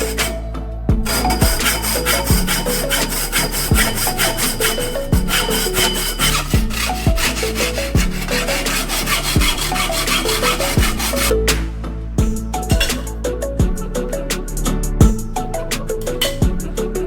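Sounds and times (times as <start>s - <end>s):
fast scratchy rasping rhythm: 0.0s - 17.0s
kick drum thuds: 0.9s - 1.6s, 2.3s - 2.6s, 3.7s - 4.0s, 6.5s - 7.2s, 8.0s - 8.2s, 9.4s - 9.6s, 10.8s - 11.1s, 12.2s - 13.0s, 13.6s - 13.9s, 15.0s - 15.4s, 16.4s - 16.7s.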